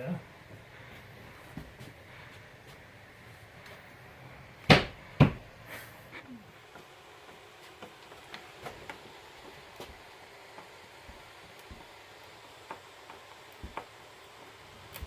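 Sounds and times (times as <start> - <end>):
sharp knocks: 4.7 - 5.4.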